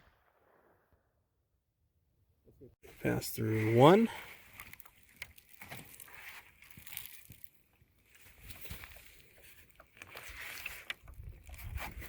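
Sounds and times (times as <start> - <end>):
handling and rustling noises: 2.9 - 12.0
wind rumble on microphone: 11.0 - 12.0.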